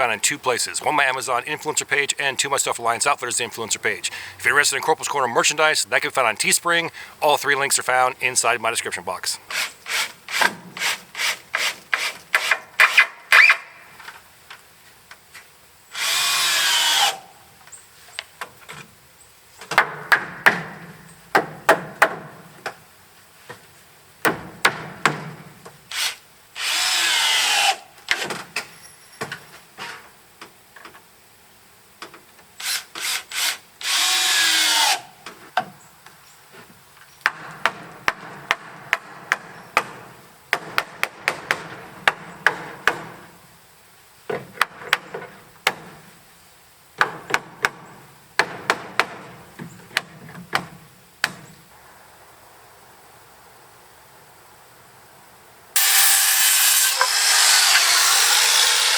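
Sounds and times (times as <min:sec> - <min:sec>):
cordless drill driving screws: 0:16.0 - 0:17.2, 0:25.9 - 0:27.8, 0:32.6 - 0:35.1, 0:55.8 - 0:58.9
rhythmic rasping on wood: 0:55.8 - 0:58.9.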